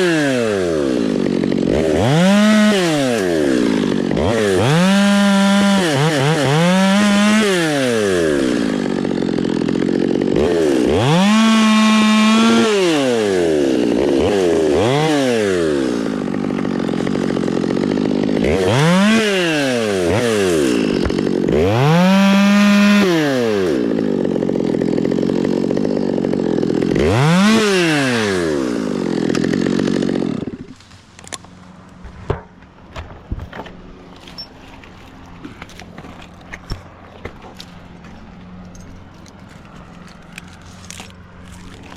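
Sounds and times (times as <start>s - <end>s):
chainsaw revving: 0.0s - 32.0s, 34.1s - 41.9s.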